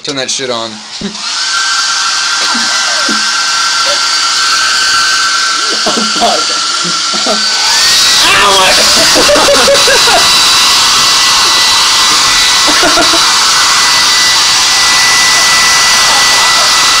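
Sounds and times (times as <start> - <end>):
hair dryer blowing: 0.8 - 17.0
person speaking: 5.6 - 7.6.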